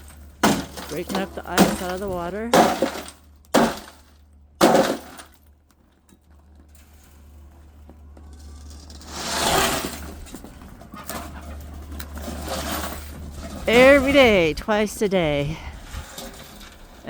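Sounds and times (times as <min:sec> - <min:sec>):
ice cracking and clattering: 0:00.0 - 0:05.8.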